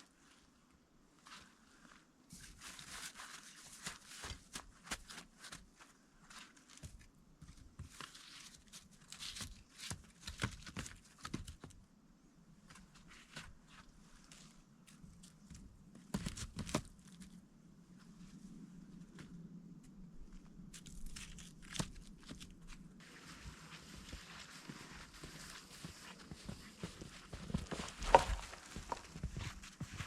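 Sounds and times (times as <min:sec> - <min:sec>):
crunching and cracking from handling: 0:20.6 - 0:22.9, 0:27.4 - 0:29.4.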